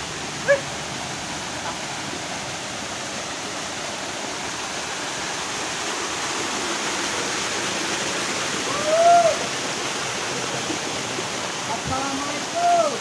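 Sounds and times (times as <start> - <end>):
waterfall pouring: 0.0 - 13.0.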